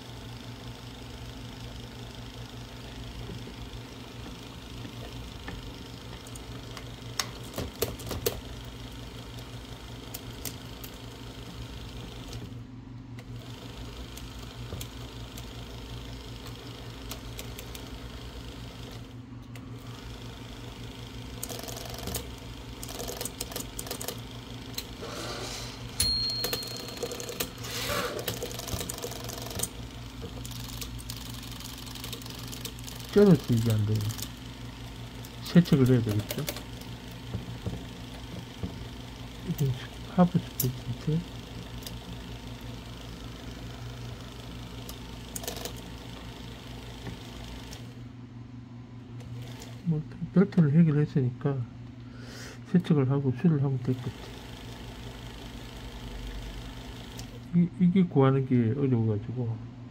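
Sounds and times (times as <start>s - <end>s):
typewriter motor hum: 0.0s - 48.1s, 49.1s - 50.0s, 53.9s - 57.5s
typewriter clicks and clatter: 7.3s - 8.4s, 21.4s - 24.2s, 28.2s - 29.8s, 30.4s - 34.3s, 35.5s - 36.8s.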